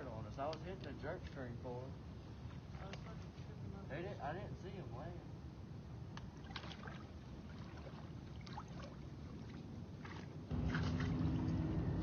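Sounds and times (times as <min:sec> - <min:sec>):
water sloshing and splashing: 0:02.3 - 0:03.6, 0:06.2 - 0:12.0
low droning hum: 0:04.6 - 0:12.0.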